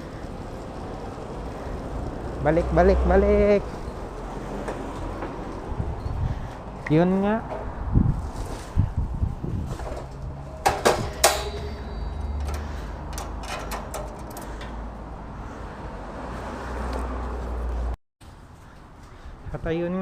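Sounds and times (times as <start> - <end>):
door latch clacking: 10.6 - 14.8.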